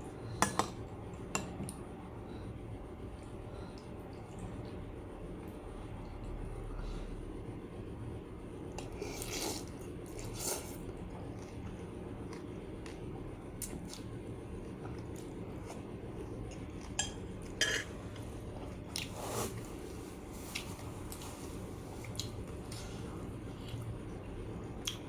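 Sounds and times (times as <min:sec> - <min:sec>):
low background hum: 0:00.0 - 0:25.0
dishes and utensils clinking: 0:17.0 - 0:17.9.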